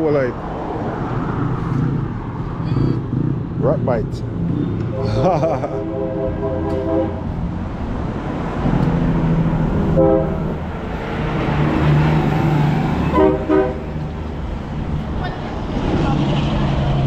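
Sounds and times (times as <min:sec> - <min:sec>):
road traffic engine rumble: 0:00.0 - 0:17.0
vehicle horn toots: 0:04.9 - 0:07.3, 0:10.0 - 0:10.5, 0:13.0 - 0:13.9.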